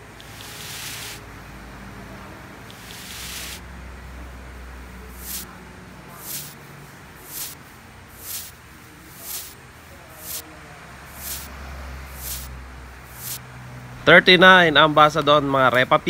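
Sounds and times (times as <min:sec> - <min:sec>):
brief hiss: 0:00.2 - 0:01.2, 0:02.7 - 0:03.6, 0:05.1 - 0:06.6, 0:07.2 - 0:10.4, 0:11.1 - 0:12.5, 0:13.1 - 0:13.4.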